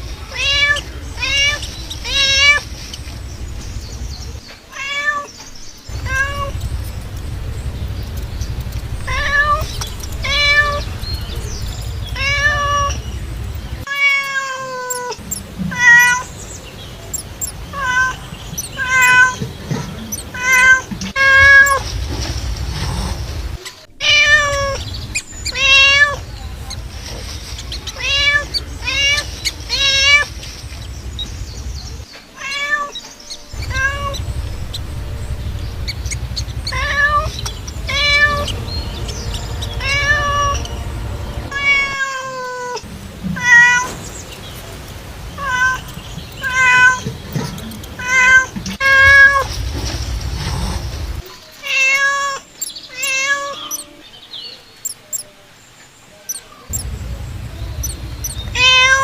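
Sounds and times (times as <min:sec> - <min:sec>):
cat meowing: 0:00.3 - 0:02.6, 0:04.7 - 0:05.3, 0:06.0 - 0:13.0, 0:13.8 - 0:16.3, 0:17.4 - 0:21.8, 0:23.5 - 0:26.9, 0:27.6 - 0:30.9, 0:32.4 - 0:33.0, 0:33.6 - 0:42.8, 0:43.4 - 0:44.0, 0:45.4 - 0:49.5, 0:51.6 - 0:54.0, 0:56.7 - 0:59.0
low rumble: 0:01.2 - 0:04.5, 0:05.7 - 0:13.9, 0:21.3 - 0:32.1, 0:33.5 - 0:42.0, 0:48.9 - 0:51.3, 0:56.7 - 0:59.0.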